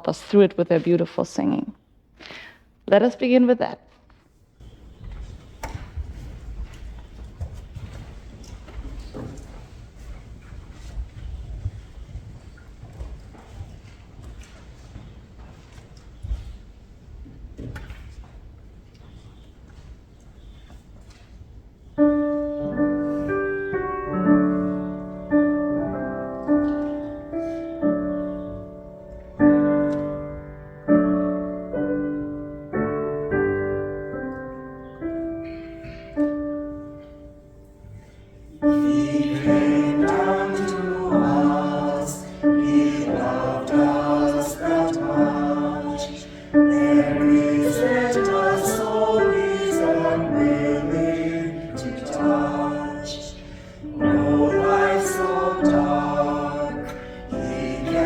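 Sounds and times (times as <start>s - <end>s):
piano chords: 21.9s - 58.0s
choir singing a hymn: 22.3s - 32.8s, 33.6s - 58.0s.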